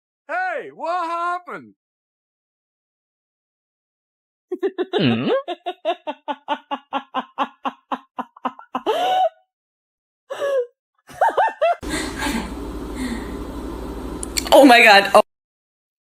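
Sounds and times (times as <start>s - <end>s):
person laughing hard: 4.5s - 9.3s, 10.3s - 13.2s.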